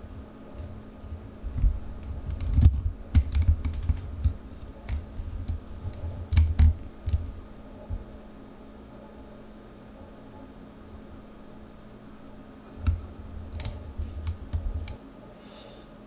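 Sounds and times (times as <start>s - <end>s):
objects being handled clicking: 0.0s - 8.2s, 12.3s - 15.0s.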